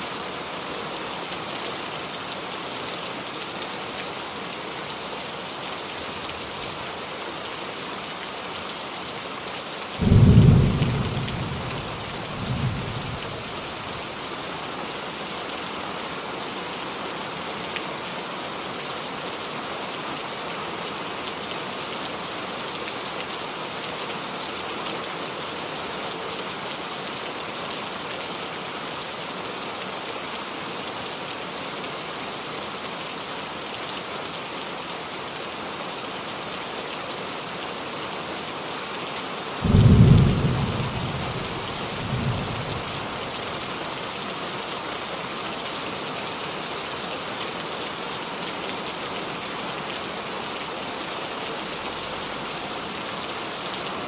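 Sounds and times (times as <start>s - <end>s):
rain on a roof: 0.0s - 54.0s
thunder rumbling: 10.0s - 13.3s, 39.6s - 43.2s.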